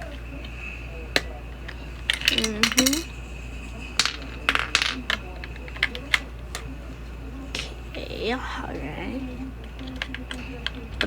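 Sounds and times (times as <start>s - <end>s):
batteries clinking against plastic: 0.0s - 6.7s.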